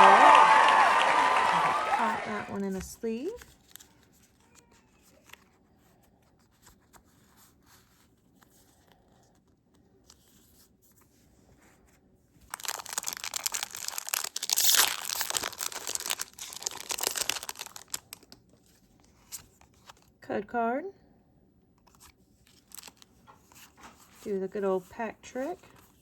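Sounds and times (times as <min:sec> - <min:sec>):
faint handling sounds: 0:02.5 - 0:20.2, 0:21.7 - 0:26.0
foil wrapper tearing and crinkling: 0:03.4 - 0:04.6, 0:12.5 - 0:20.0, 0:21.9 - 0:23.9.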